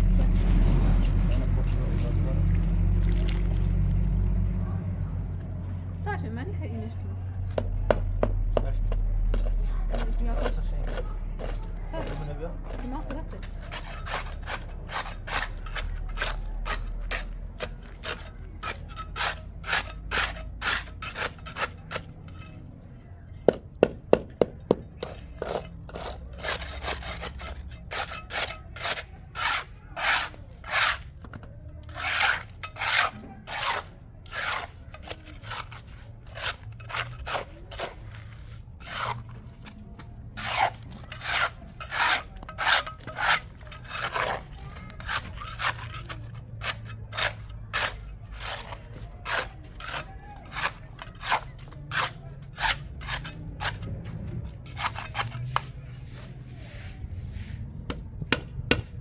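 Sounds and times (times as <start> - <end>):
scraping strokes: 9.3 - 58.0.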